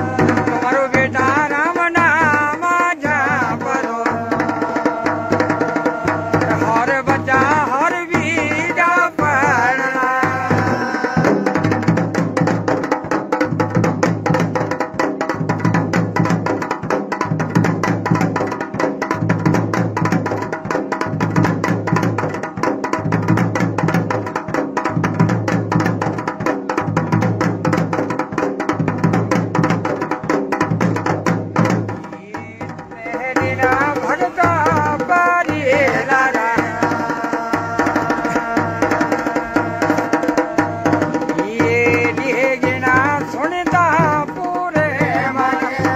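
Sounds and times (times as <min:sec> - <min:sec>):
person singing: 0:00.0 - 0:12.0, 0:32.1 - 0:45.9
drums playing fast folk rhythm: 0:00.0 - 0:45.9.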